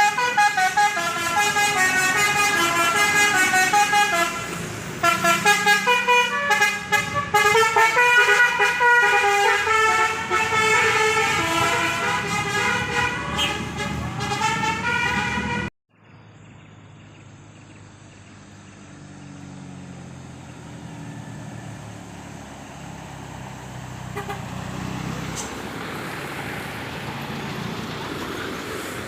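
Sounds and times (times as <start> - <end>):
bus horn playing a tune: 0.0 - 15.7, 24.0 - 25.5
bus engine drone: 0.0 - 29.0
road noise of passing vehicles: 0.0 - 29.0.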